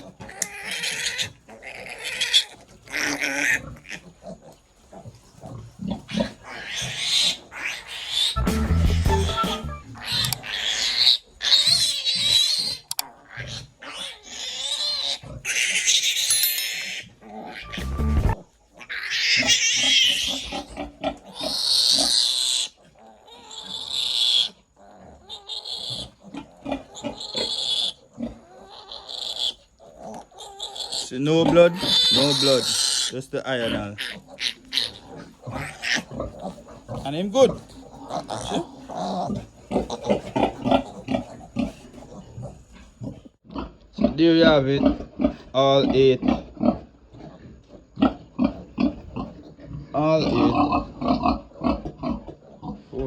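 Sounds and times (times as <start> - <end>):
piglet squealing: 0.0 - 4.1, 6.1 - 26.1, 26.8 - 41.2
piglet grunting: 0.0 - 53.0.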